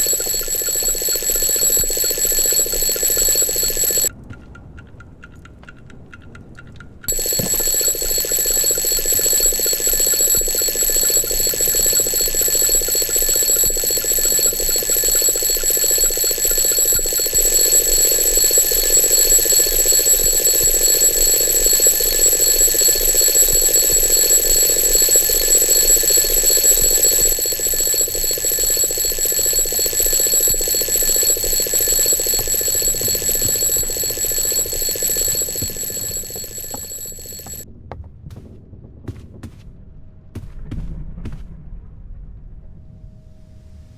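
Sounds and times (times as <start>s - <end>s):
alarm clock ringing: 0.0s - 4.1s, 7.1s - 37.6s.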